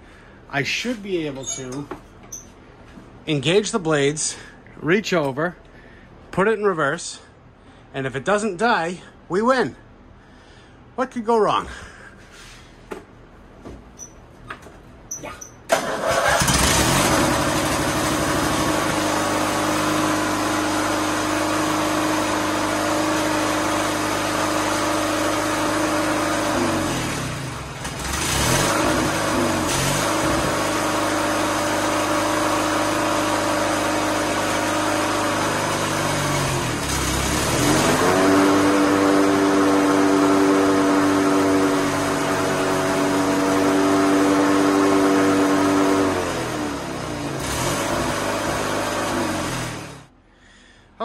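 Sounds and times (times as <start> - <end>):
riding mower engine running: 15.7 - 50.1.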